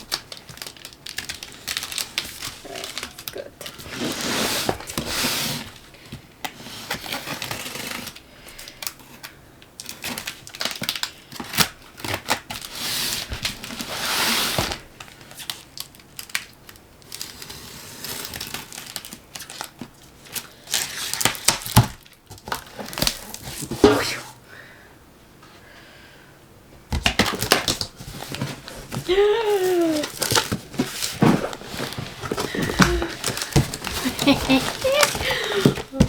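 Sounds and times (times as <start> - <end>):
packaging crinkling and rustling: 0.0 - 23.9, 26.9 - 36.0.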